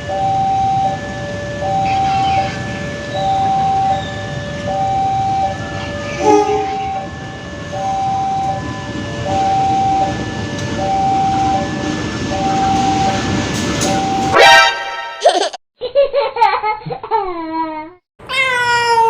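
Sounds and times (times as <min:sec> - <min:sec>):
train rumbling past: 0:00.0 - 0:15.0
two-tone crossing warning signal: 0:00.0 - 0:15.2
train horn blast: 0:06.0 - 0:07.2, 0:14.4 - 0:15.2.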